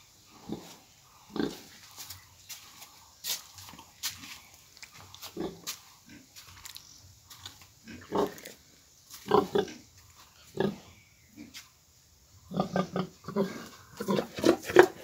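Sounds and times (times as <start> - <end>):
pigs grunting: 0.3 - 1.8, 5.4 - 6.3, 7.8 - 8.6, 9.2 - 9.8, 10.5 - 11.5, 12.5 - 15.0.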